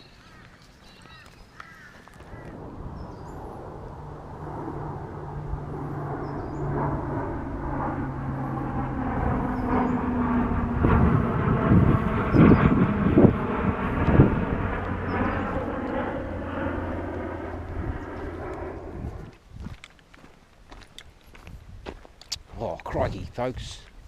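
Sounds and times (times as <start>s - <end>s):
engine droning: 2.3s - 19.3s.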